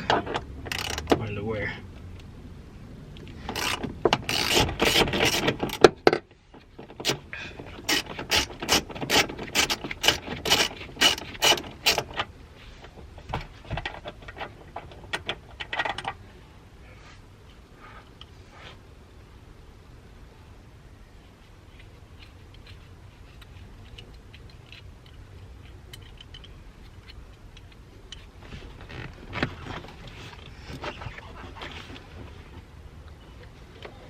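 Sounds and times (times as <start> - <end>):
socket ratchet clicking: 0.7 - 1.2, 7.8 - 12.2.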